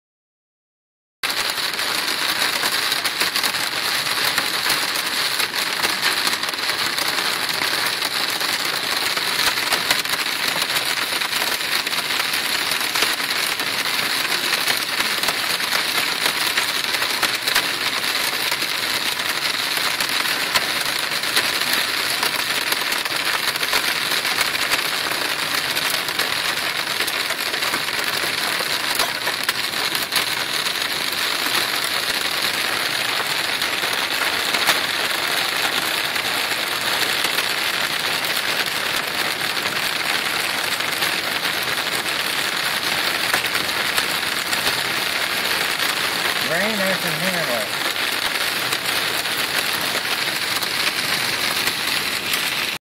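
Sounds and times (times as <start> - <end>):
heavy rain pelting a car: 1.2 - 52.8.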